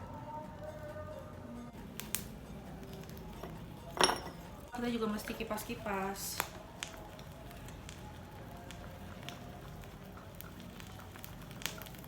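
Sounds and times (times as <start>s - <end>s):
charcoal crackling and ticking: 1.8s - 12.0s
charcoal snapping: 1.9s - 4.6s, 6.2s - 12.0s.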